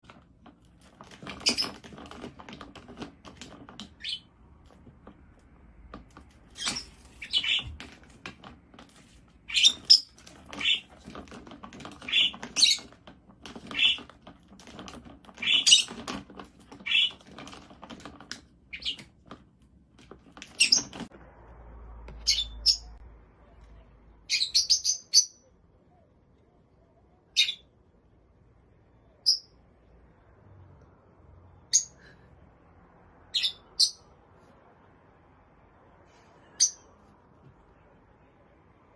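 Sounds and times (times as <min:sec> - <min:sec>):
rustling: 0:00.0 - 0:21.2
parrot chirping: 0:04.0 - 0:04.3, 0:06.5 - 0:07.6, 0:09.4 - 0:10.9, 0:15.4 - 0:16.0, 0:18.7 - 0:19.0, 0:22.2 - 0:23.0, 0:24.2 - 0:25.5, 0:27.3 - 0:27.7, 0:33.3 - 0:34.2.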